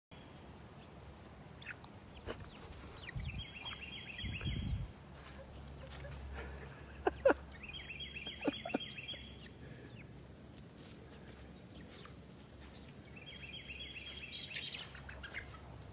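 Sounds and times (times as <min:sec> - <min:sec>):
chickens clucking: 0:00.2 - 0:15.9.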